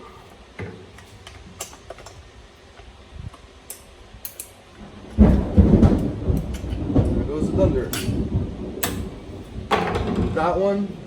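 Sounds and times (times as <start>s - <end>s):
hand tools and metal parts clicking: 0.0s - 4.6s.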